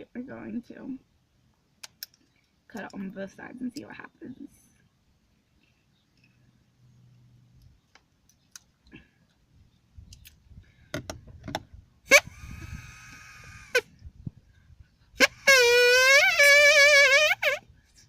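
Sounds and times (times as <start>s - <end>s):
straw horn note: 15.2s - 17.6s.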